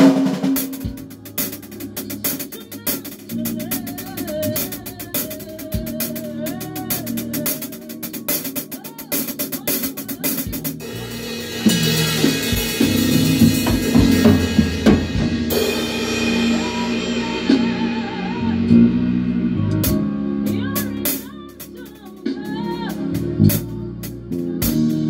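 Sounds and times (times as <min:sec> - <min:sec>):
quick drum strokes: 0:00.0 - 0:06.2, 0:06.8 - 0:18.4
live band playing: 0:00.0 - 0:25.0
cymbals ringing: 0:10.8 - 0:18.4.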